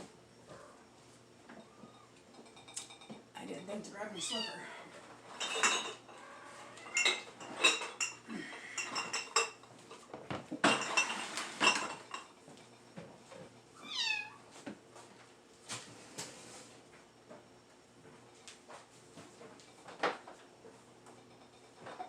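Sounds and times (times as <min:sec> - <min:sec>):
kitchen items clattering: 0:05.0 - 0:06.1, 0:06.8 - 0:13.6, 0:21.3 - 0:22.0
cat meowing: 0:13.8 - 0:14.4.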